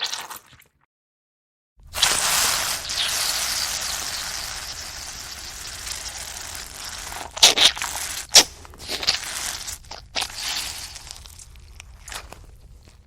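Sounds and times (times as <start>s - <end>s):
blood spraying hiss: 1.9s - 10.9s.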